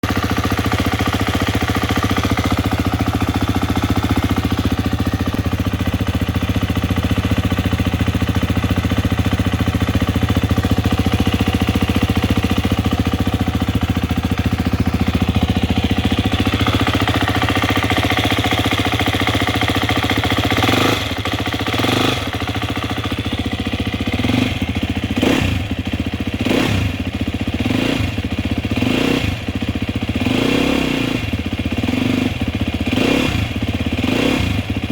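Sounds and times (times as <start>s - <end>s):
motorcycle engine idling: 0.0s - 34.9s
engine revving: 20.4s - 22.8s, 24.2s - 25.7s, 26.4s - 29.5s, 30.2s - 34.8s.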